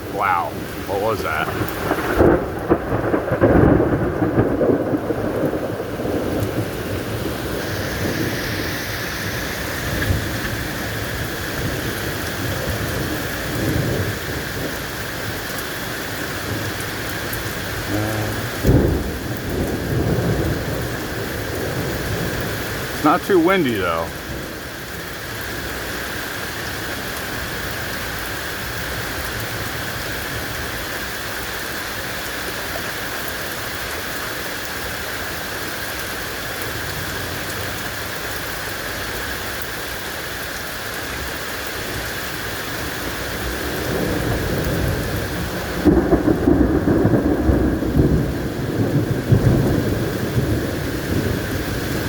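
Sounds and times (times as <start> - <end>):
steady rain falling: 0.0 - 52.0
thunder rumbling: 0.4 - 13.0, 17.5 - 24.5, 43.7 - 52.0.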